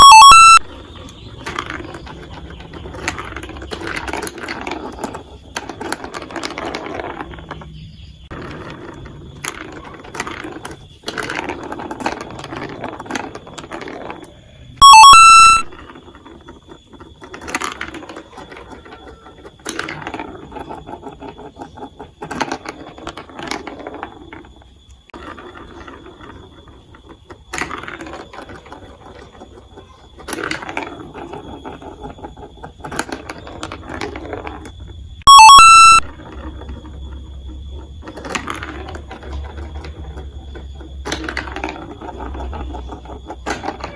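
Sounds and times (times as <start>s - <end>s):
loud ringing tone: 0.0s - 0.8s, 14.7s - 16.1s, 35.2s - 36.7s
marbles rolling through plastic track: 0.0s - 43.9s.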